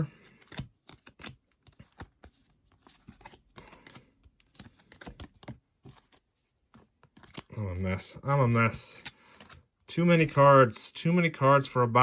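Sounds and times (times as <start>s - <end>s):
trading cards being flipped: 0.2s - 9.7s.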